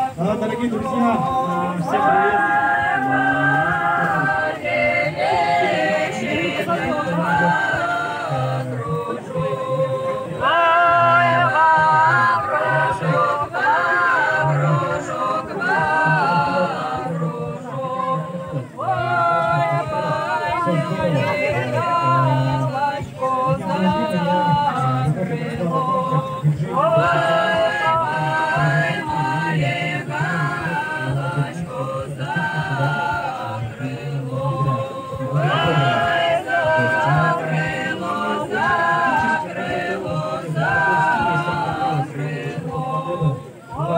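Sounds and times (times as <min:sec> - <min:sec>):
group singing in harmony: 0:00.0 - 0:43.9.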